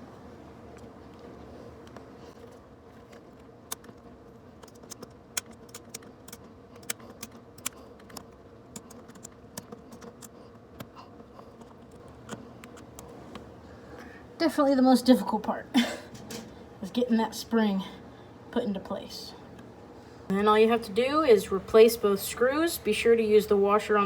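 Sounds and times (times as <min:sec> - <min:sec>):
faint hum: 0:00.0 - 0:24.0
small metal and plastic clicks: 0:04.6 - 0:13.1.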